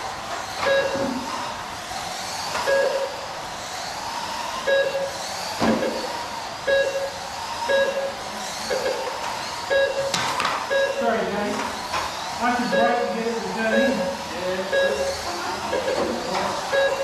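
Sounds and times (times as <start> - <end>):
electric motors whining: 0.0 - 17.0
short beeps: 0.7 - 1.0, 4.7 - 5.1, 6.7 - 9.0, 9.7 - 10.1, 10.7 - 11.1, 13.7 - 15.2, 16.7 - 17.0
thump: 5.6 - 5.9.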